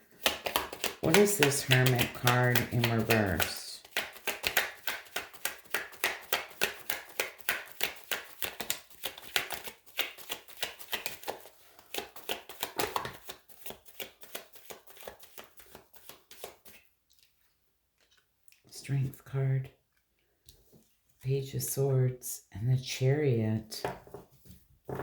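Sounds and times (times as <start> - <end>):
cards being shuffled: 0.0 - 18.3.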